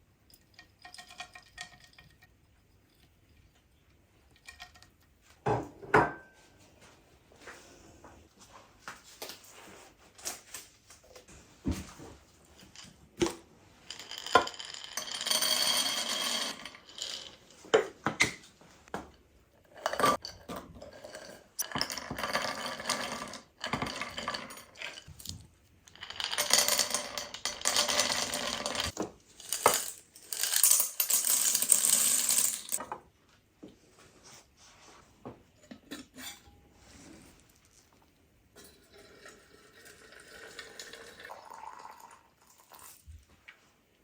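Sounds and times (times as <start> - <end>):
metal utensils scraping pots: 19.6 - 25.3, 35.6 - 37.3.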